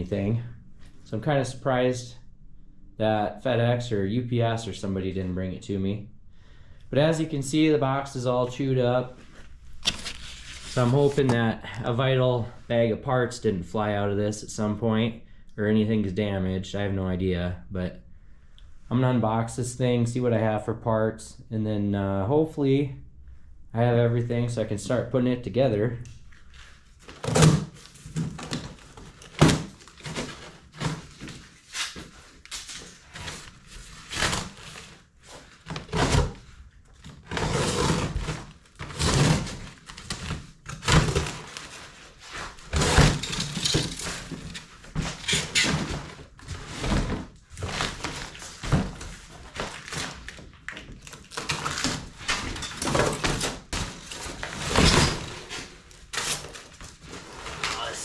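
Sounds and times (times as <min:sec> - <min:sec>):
cardboard rustling and ripping: 0:09.7 - 0:11.4, 0:26.6 - 0:58.0.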